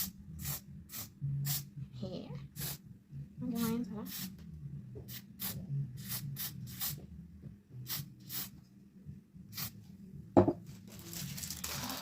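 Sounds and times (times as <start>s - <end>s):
aerosol hairspray hisses: 5.1s - 7.0s, 7.9s - 8.5s.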